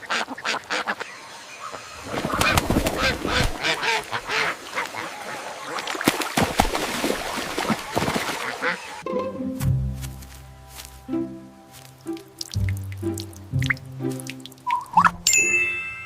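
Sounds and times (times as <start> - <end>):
rapid quacking animal calls: 0.0 - 5.9, 7.7 - 9.0.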